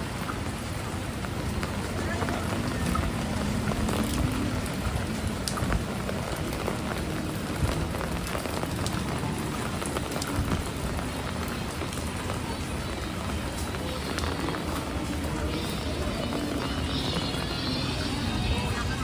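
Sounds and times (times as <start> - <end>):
heavy rain splashing: 0.0 - 19.0
sharp raindrop hits: 0.0 - 19.0.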